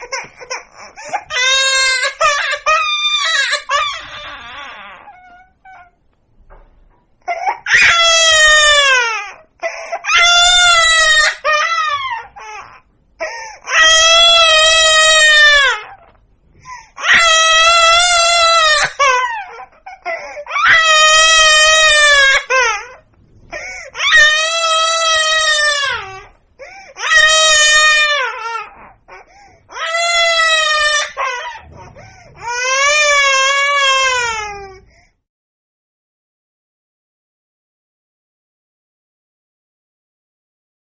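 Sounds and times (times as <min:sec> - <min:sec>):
baby sobbing breaths: 0:00.0 - 0:01.3, 0:12.4 - 0:13.8, 0:16.5 - 0:17.1, 0:22.8 - 0:24.0
baby crying: 0:00.0 - 0:06.0, 0:07.2 - 0:34.9.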